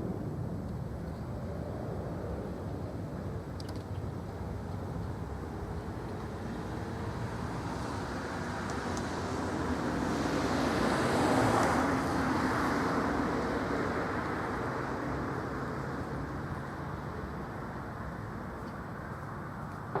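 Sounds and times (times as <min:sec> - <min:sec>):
road traffic rush: 0:00.0 - 0:20.0.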